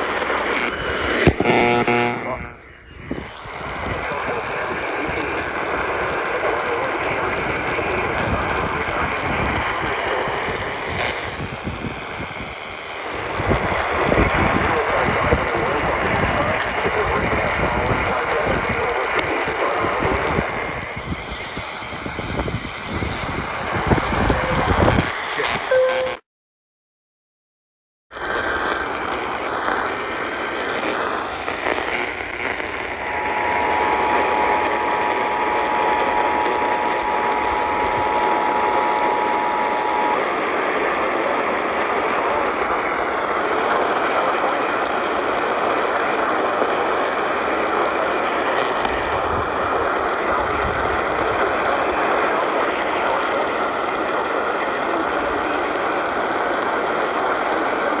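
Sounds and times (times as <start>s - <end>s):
loud radio static hiss: 0.0s - 26.2s, 28.2s - 58.0s
two-tone attention signal: 1.4s - 2.6s, 25.7s - 26.2s.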